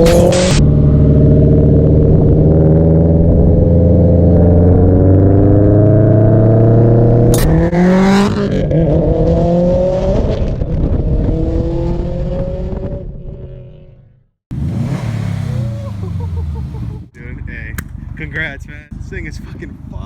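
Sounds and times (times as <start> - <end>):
car engine accelerating hard: 0.0 - 12.8, 14.5 - 17.1.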